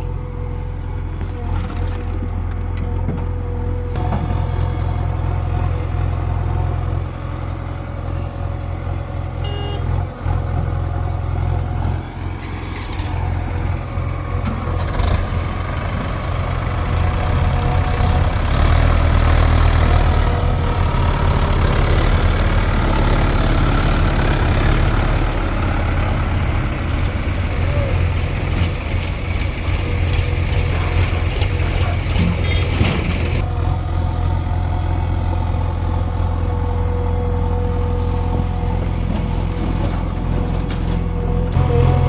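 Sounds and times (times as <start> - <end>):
diesel engine droning: 0.0 - 42.0.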